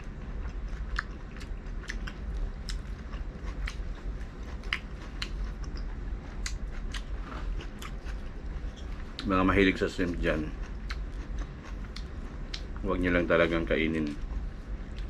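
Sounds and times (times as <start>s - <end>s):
person chewing with wet smacks: 0.0s - 9.3s, 10.1s - 12.8s.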